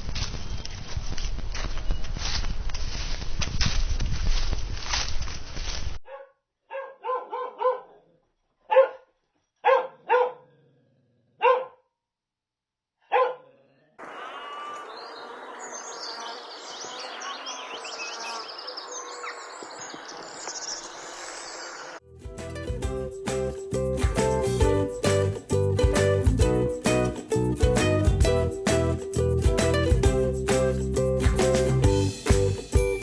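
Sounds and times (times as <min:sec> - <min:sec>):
dog barking: 0:06.0 - 0:10.5, 0:11.4 - 0:11.9, 0:13.0 - 0:13.6
high chirping: 0:14.0 - 0:22.0.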